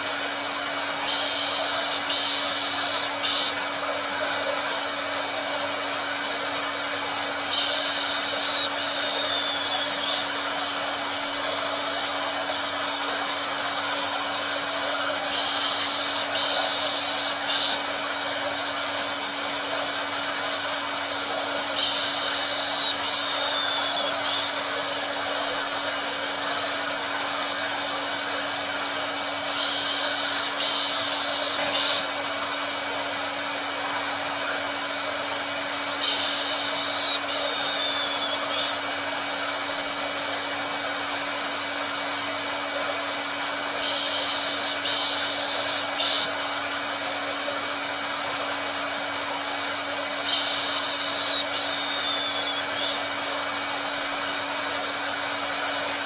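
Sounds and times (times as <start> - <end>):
higher brighter hiss: 0.0 - 41.0, 43.7 - 49.3, 50.0 - 56.0
hair dryer blowing: 0.0 - 56.0.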